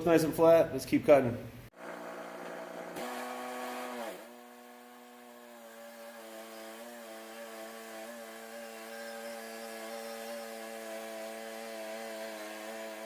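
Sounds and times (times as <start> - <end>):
bandsaw mill sawing log: 1.8 - 13.0.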